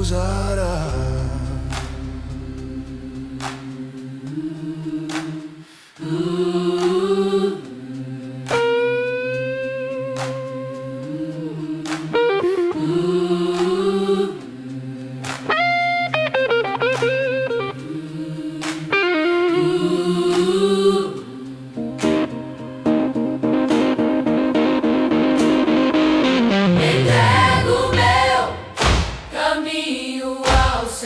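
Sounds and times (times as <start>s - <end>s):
sustained chords: 0.0s - 3.5s, 21.7s - 28.8s
lead guitar with bent notes: 15.5s - 17.9s, 18.9s - 19.7s, 21.8s - 28.4s
drum hits: 27.8s - 29.4s.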